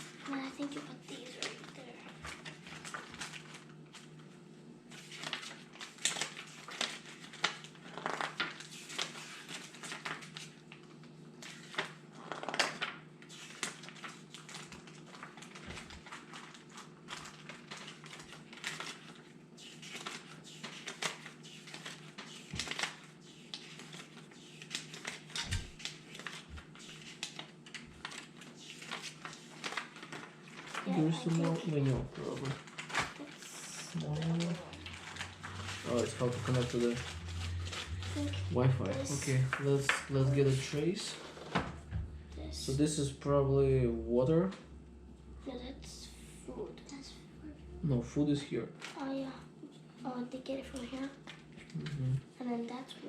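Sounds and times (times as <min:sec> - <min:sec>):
packaging crinkling and rustling: 0:00.0 - 0:04.3, 0:04.9 - 0:41.7, 0:48.8 - 0:49.0
low hum: 0:30.9 - 0:48.5.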